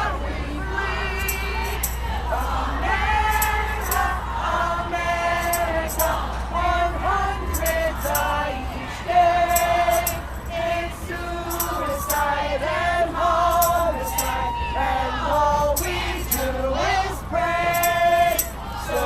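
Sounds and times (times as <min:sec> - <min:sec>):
group of people singing: 0:00.0 - 0:19.0
high jingling strokes: 0:01.1 - 0:04.3, 0:05.3 - 0:06.3, 0:07.4 - 0:08.8, 0:09.4 - 0:12.5, 0:13.4 - 0:14.5, 0:15.5 - 0:16.8, 0:17.7 - 0:19.0.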